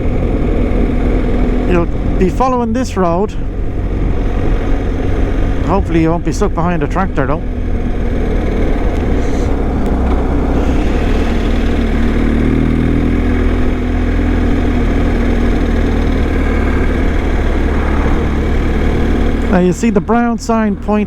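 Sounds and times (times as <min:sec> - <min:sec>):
motorcycle engine cruising: 0:00.0 - 0:21.0
wind rumble on microphone: 0:03.1 - 0:19.6.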